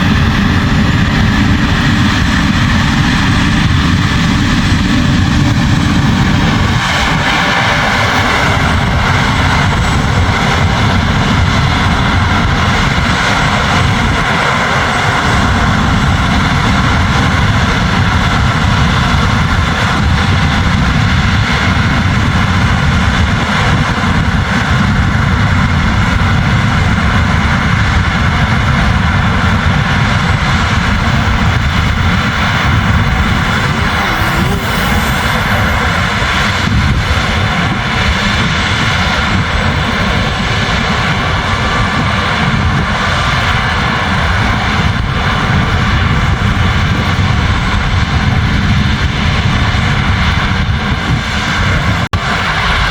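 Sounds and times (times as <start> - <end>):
constant higher hum: 0.0 - 23.2, 28.5 - 48.5
combine harvester drone: 0.0 - 52.9.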